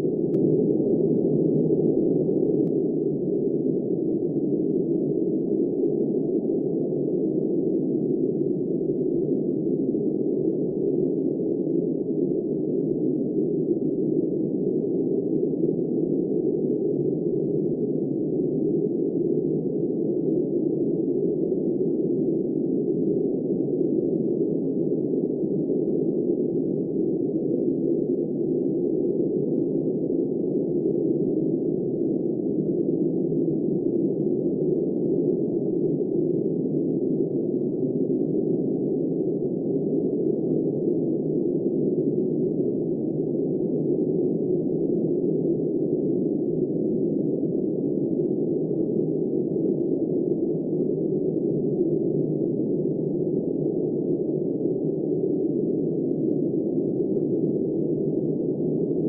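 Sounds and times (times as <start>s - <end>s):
muffled blizzard wind: 0.0s - 59.0s.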